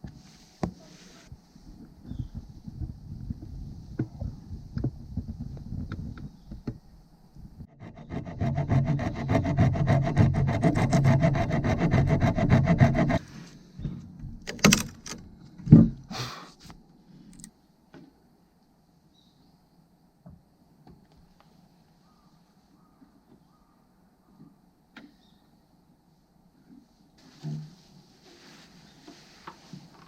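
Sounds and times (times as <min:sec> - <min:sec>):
hand saw rasping through wood: 0:07.8 - 0:13.2.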